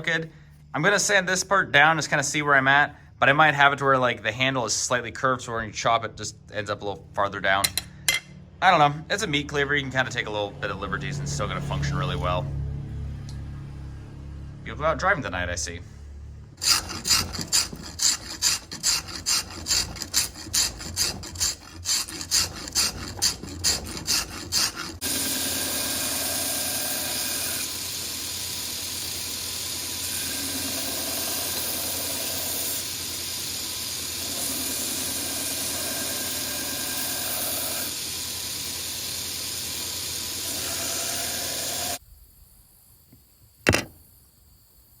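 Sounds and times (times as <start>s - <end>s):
sanding wooden handle: 16.6s - 42.0s.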